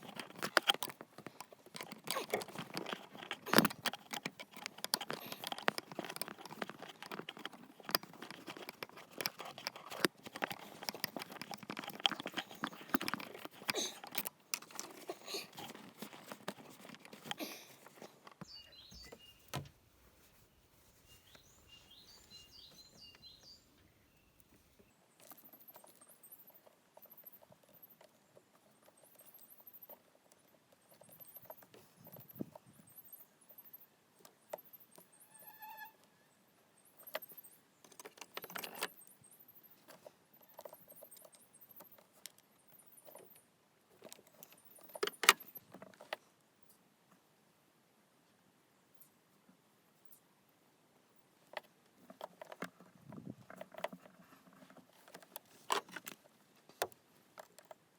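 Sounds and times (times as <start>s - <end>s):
hands clicking and tapping on hoses: 0.0s - 19.7s
faint high chirping: 18.3s - 19.6s, 20.5s - 42.0s.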